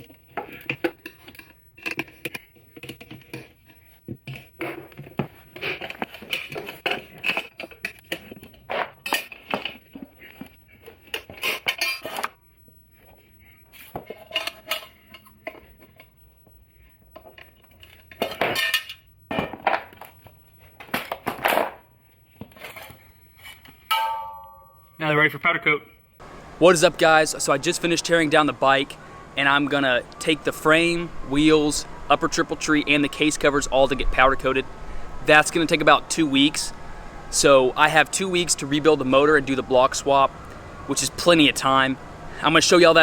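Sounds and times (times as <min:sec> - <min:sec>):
metal tools clanking on metal: 0:23.9 - 0:24.9.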